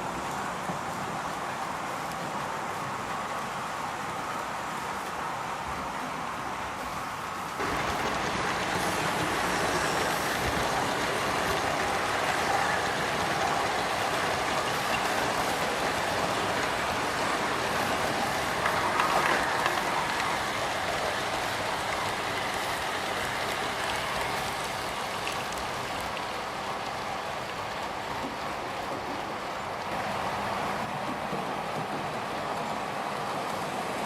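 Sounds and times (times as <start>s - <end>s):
model train wheels rattling on rails: 7.6s - 29.9s.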